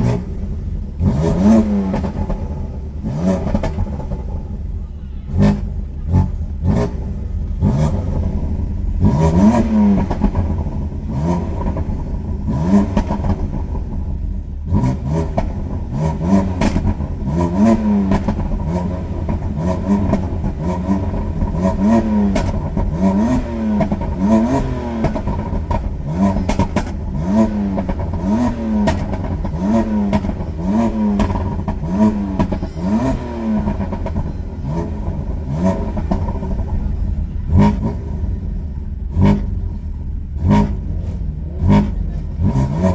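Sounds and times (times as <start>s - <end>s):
car engine revving: 0.0s - 42.9s
sharp exhaust cracks: 14.8s - 42.9s.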